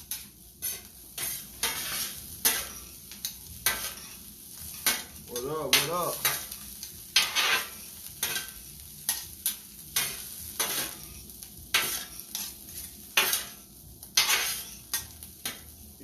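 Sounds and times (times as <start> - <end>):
spatula scraping pan: 0.0 - 15.7
food sizzling: 0.0 - 16.0.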